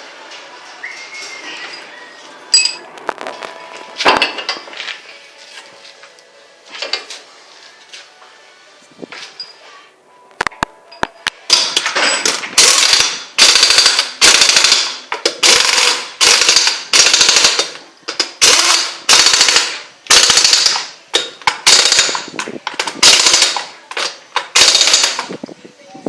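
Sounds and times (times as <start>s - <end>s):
pneumatic impact wrench rattling: 11.5s - 25.4s.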